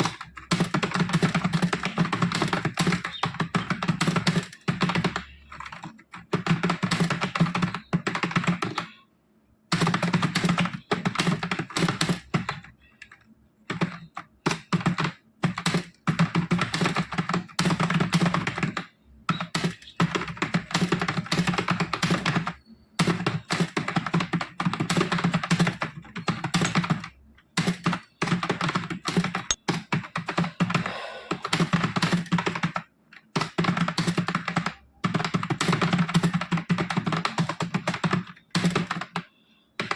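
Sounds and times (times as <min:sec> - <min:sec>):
fast typing on keyboard: 0:00.0 - 0:09.0, 0:09.7 - 0:39.9.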